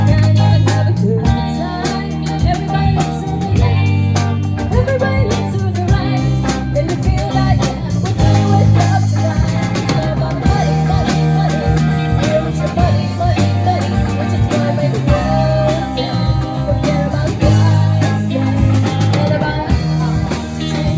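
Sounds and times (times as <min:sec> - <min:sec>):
drum kit: 0:00.0 - 0:20.9
guitar: 0:00.0 - 0:20.9
person singing: 0:00.0 - 0:20.9.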